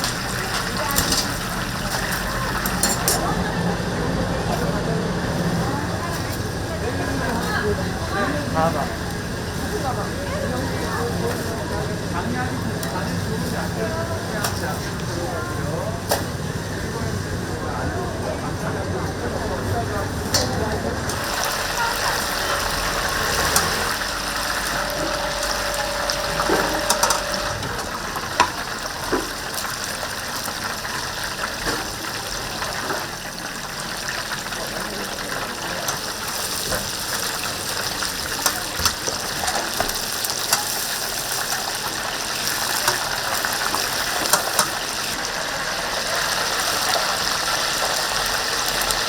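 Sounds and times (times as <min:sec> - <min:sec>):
kitchen clicks and clatter: 0:00.0 - 0:03.5, 0:20.2 - 0:29.3, 0:37.8 - 0:45.2
short steady tone: 0:21.2 - 0:28.5.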